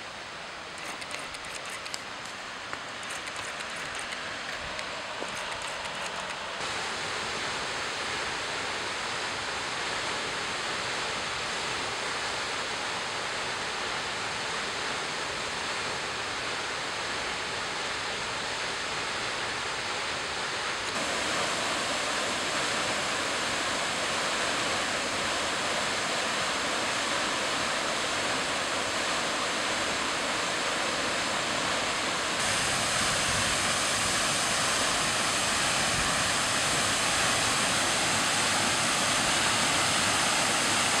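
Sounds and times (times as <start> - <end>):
waterfall roaring: 0.0 - 41.0.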